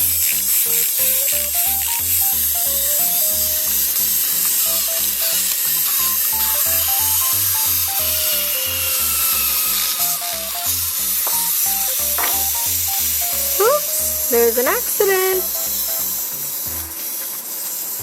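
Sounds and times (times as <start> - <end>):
simple melody over bass beat: 10.2 - 17.0.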